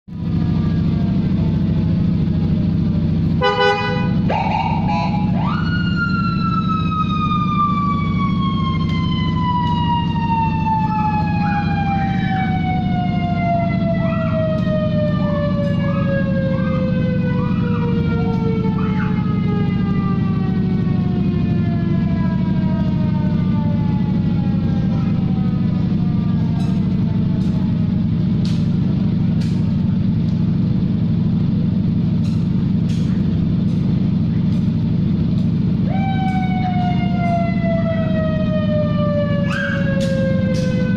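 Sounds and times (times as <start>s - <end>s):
siren falling tone: 3.1s - 28.7s, 34.1s - 40.9s.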